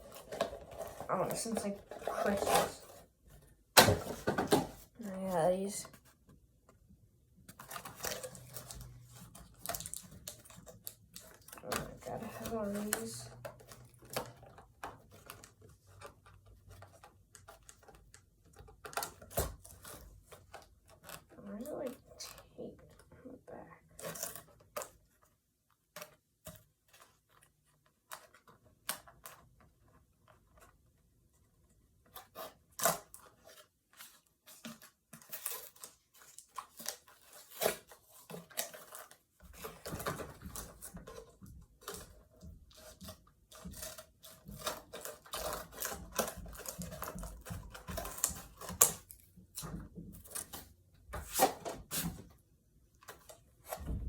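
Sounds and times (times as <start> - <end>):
packaging crinkling and tearing: 7.5 - 23.0, 32.0 - 52.2.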